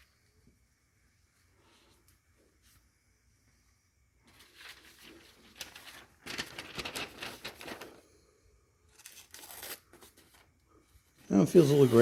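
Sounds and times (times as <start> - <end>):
knife slicing paper: 8.9 - 10.2, 11.5 - 12.0.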